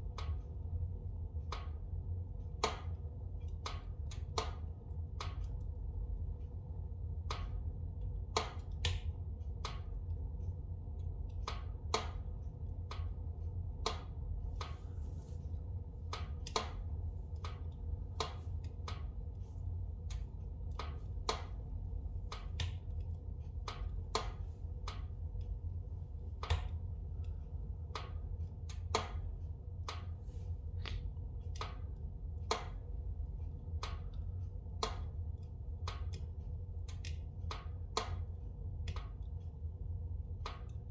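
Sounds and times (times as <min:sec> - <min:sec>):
low fire rumble: 0:00.0 - 0:40.9
logs crackling and popping in fire: 0:08.3 - 0:09.8, 0:16.0 - 0:19.1, 0:20.0 - 0:25.5, 0:27.9 - 0:29.3, 0:32.5 - 0:32.9.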